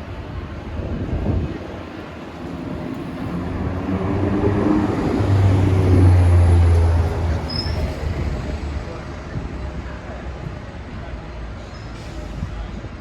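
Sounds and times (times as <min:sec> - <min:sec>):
motor vehicle engine passing by: 0:03.1 - 0:08.2.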